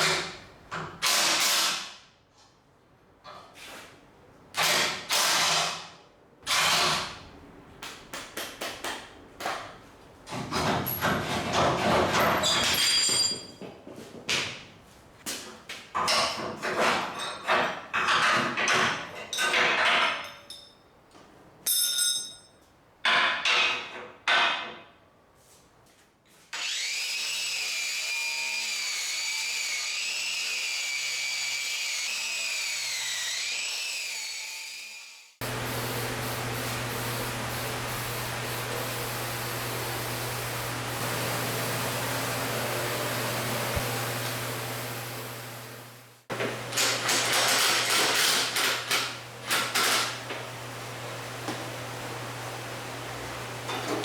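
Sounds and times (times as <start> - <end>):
metallic clinks: 21.7 - 22.6.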